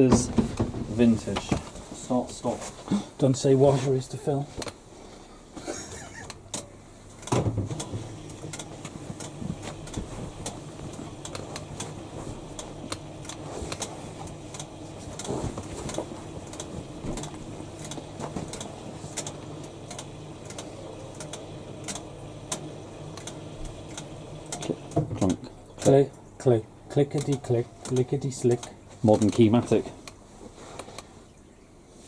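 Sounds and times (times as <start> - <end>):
washing machine clunk: 0.0 - 1.8, 7.2 - 11.0, 15.1 - 18.6
washing machine humming: 0.0 - 30.5
mechanical clicking: 16.5 - 24.7, 27.1 - 30.2.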